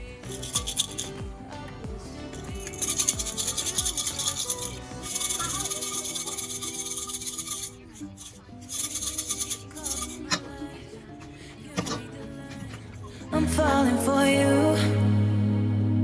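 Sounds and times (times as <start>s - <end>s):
background pop music: 0.0s - 15.3s
brisk scrubbing: 0.2s - 1.2s, 2.4s - 13.6s.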